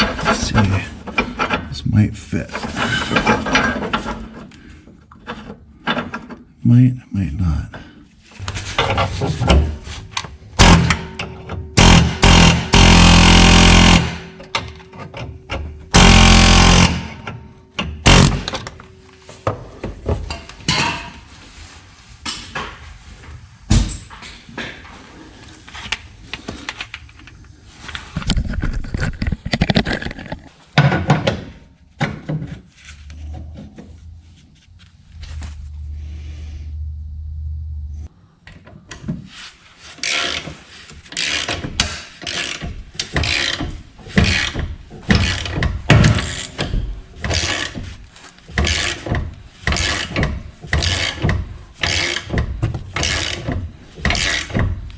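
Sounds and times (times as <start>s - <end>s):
power tool driving: 10.6s - 11.1s, 11.8s - 14.4s, 15.9s - 17.3s, 18.0s - 18.6s.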